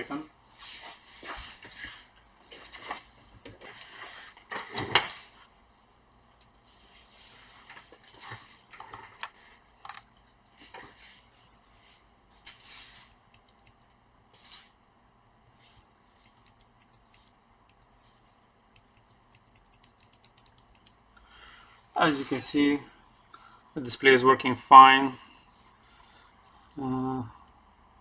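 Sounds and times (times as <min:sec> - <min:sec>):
plastic and metal parts clattering: 0:02.5 - 0:05.4.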